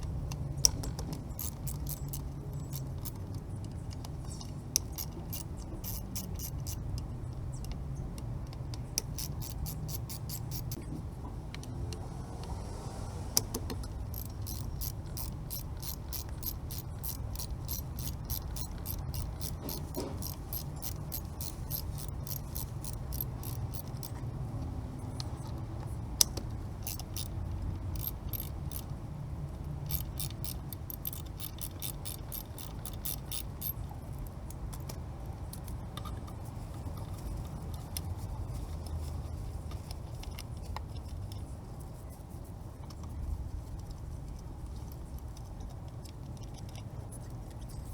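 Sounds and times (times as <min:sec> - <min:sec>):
ticking rattle from drivetrain: 0:00.6 - 0:03.2, 0:13.8 - 0:24.2, 0:26.8 - 0:28.9, 0:29.8 - 0:33.8.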